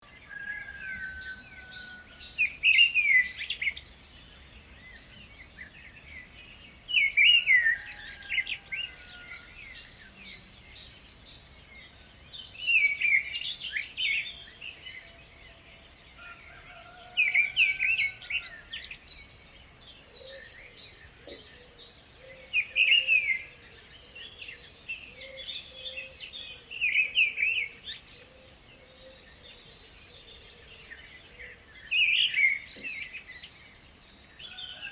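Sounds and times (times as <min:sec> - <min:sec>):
loud bird song phrase: 0:00.0 - 0:34.9
birds chirping and whistling: 0:16.6 - 0:34.9.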